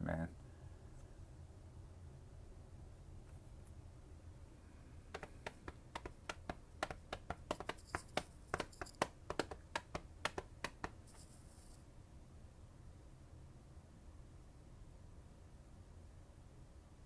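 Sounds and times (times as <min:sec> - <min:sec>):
typing on a computer keyboard: 0:05.1 - 0:11.8.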